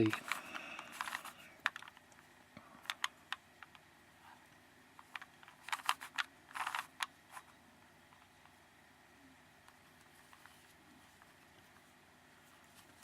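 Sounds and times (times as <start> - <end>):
puzzle cube plastic clicks: 0.0 - 2.2, 2.8 - 3.8, 5.0 - 7.5.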